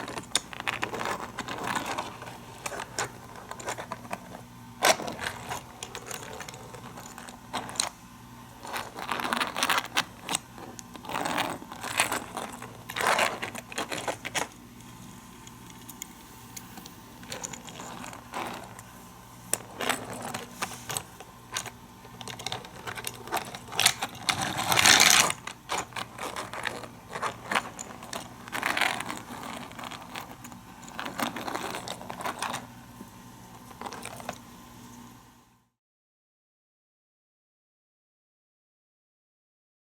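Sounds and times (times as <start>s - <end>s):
toy cars and plastic track clattering: 0.0s - 7.9s, 19.5s - 32.7s.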